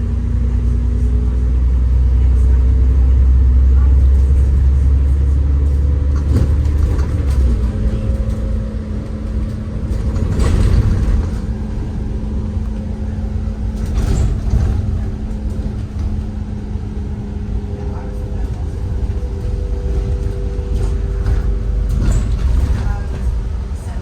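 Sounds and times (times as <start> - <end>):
bus engine rumble: 0.0 - 24.0
knocks and rattles in cabin: 5.8 - 24.0.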